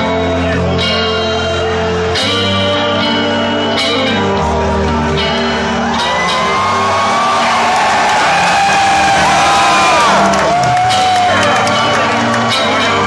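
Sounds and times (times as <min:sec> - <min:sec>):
crowd shouting: 0:05.0 - 0:13.0.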